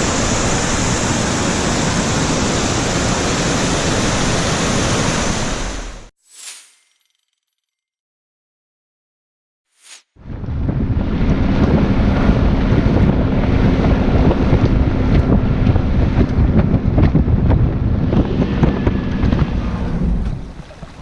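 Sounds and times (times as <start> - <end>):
waterfall rushing: 0.0 - 6.1.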